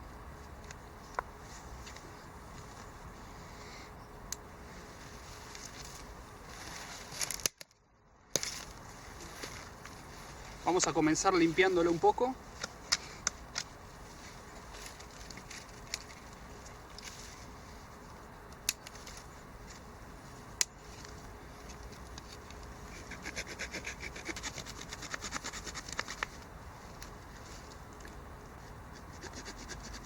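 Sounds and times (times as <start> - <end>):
blade rasping wood: 22.9 - 26.0.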